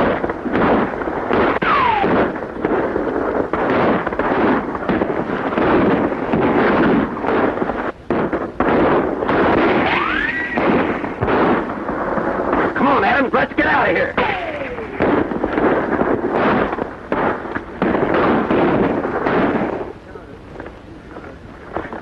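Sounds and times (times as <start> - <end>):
bullet ricochet whine: 0.0 - 2.4, 5.6 - 11.7, 14.2 - 19.8
gunshots: 0.0 - 20.0.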